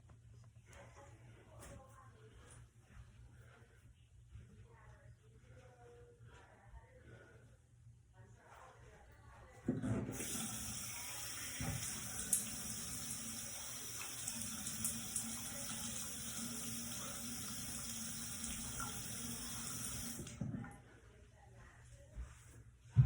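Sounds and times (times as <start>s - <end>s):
running water: 9.7s - 20.7s.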